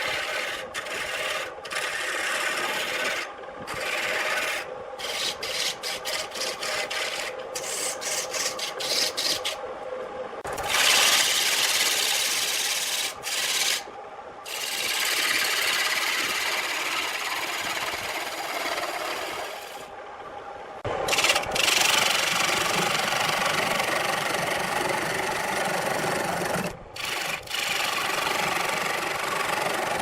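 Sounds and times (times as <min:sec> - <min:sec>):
hand tool rasping on turning wood: 0:00.0 - 0:09.6
lathe humming: 0:00.0 - 0:09.6
tool scraping wood in long passes: 0:00.0 - 0:09.6, 0:10.4 - 0:19.9, 0:21.1 - 0:30.0.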